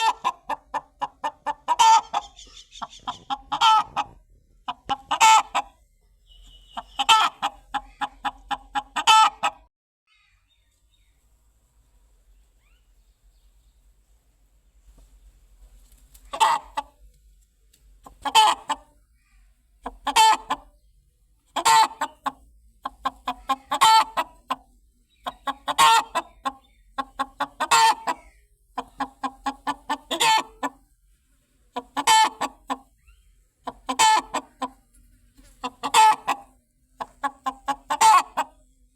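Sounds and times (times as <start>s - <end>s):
chicken clucking: 0.0s - 9.7s, 15.7s - 17.2s, 18.0s - 19.1s, 19.8s - 30.9s, 31.6s - 38.9s.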